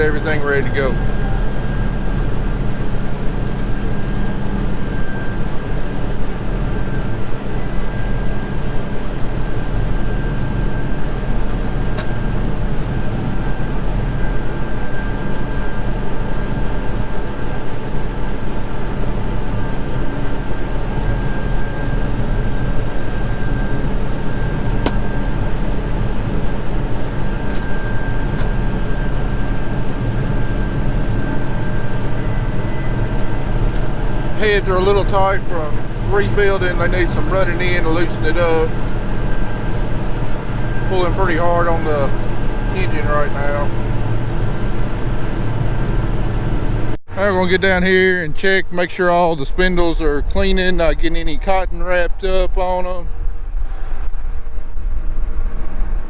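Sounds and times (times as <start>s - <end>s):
high whine: 0.0s - 56.0s
cotton picker engine under load: 30.0s - 44.1s.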